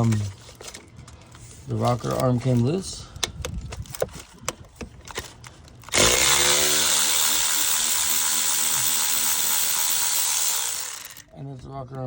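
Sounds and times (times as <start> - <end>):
cordless power tool motor: 5.8 - 11.3.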